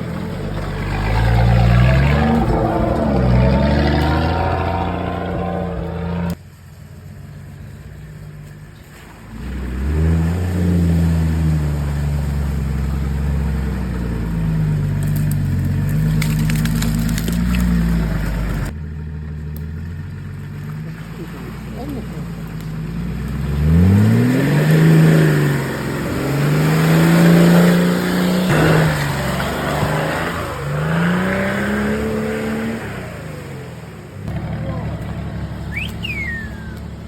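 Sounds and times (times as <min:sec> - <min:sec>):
suv engine revving under load: 0:00.0 - 0:06.4, 0:17.2 - 0:37.0.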